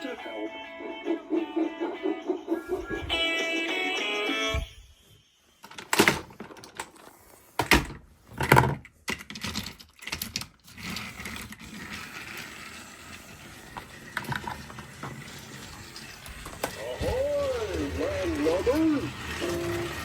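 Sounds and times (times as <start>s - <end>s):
plastic toy pieces clicking: 8.4s - 12.4s.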